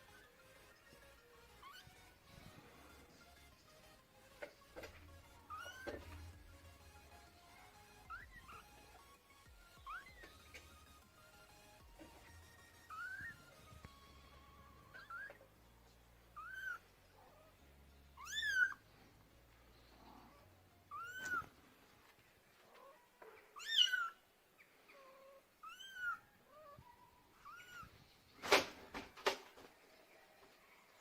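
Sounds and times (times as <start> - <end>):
kittens meowing: 1.5 - 2.2, 5.4 - 6.1, 9.8 - 10.4, 12.9 - 13.5, 14.8 - 15.5, 16.3 - 17.6, 18.2 - 18.8, 20.0 - 21.6, 22.7 - 24.2, 24.8 - 28.1.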